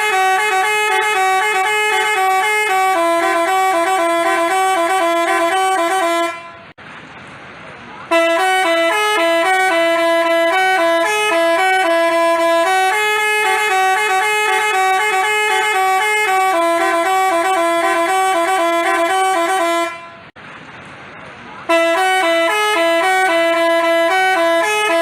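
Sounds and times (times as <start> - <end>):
multi-tone bus horn melody: 0.0 - 6.8, 8.1 - 20.4, 21.6 - 25.0.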